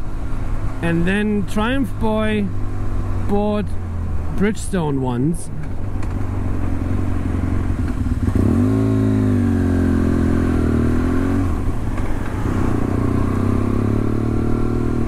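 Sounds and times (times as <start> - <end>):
motorcycle engine accelerating: 5.6 - 15.0.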